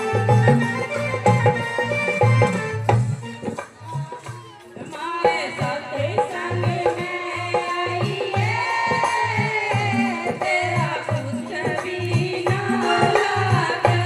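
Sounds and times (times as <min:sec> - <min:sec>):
hand drum rhythm: 0:00.0 - 0:14.0
person singing devotional song: 0:03.4 - 0:14.0.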